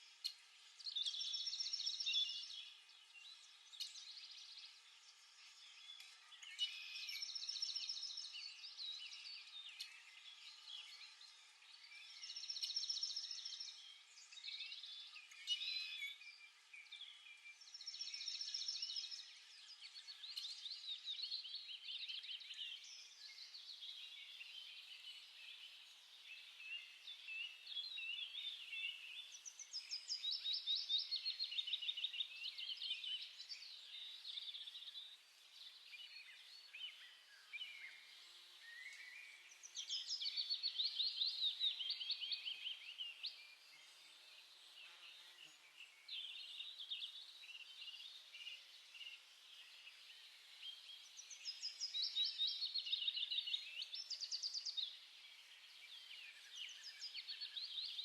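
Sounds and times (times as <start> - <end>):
songbirds chirping and singing: 0.0 - 58.0.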